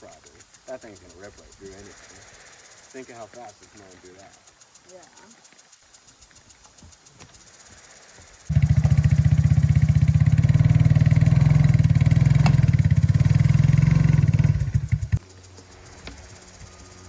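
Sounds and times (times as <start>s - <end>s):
small gas engine running: 8.4s - 17.0s.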